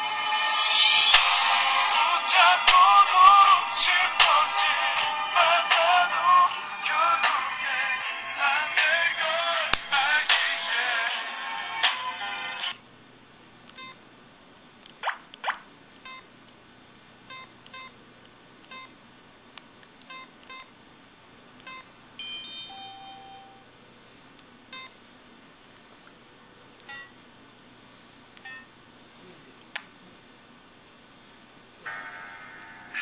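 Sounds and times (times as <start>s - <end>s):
multi-note phone chime: 22.2s - 23.7s
phone key beeps: 26.8s - 27.1s.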